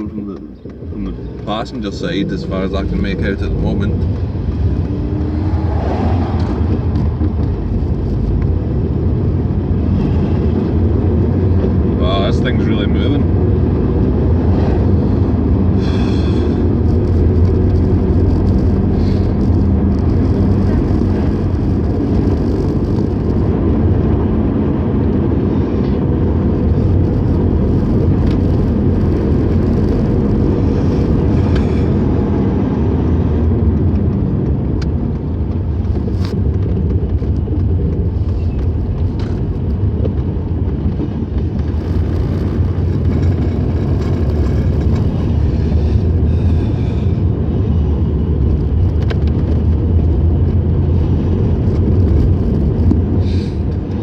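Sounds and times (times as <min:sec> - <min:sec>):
car engine at speed: 0:00.0 - 0:54.0
road noise inside car: 0:00.0 - 0:54.0.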